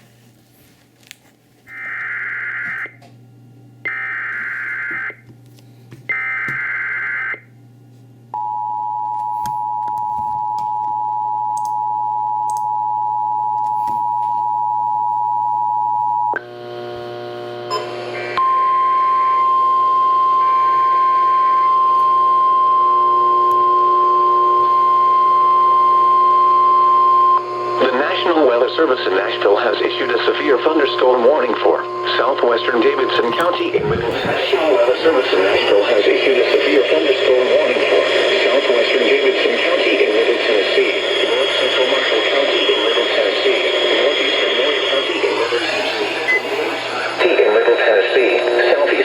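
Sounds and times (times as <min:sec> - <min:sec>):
screeching digital header bursts: 0:33.6 - 0:37.4, 0:41.2 - 0:48.5
two-tone attention signal: 0:44.9 - 0:47.4
steady single alert tone: 0:45.4 - 0:47.3.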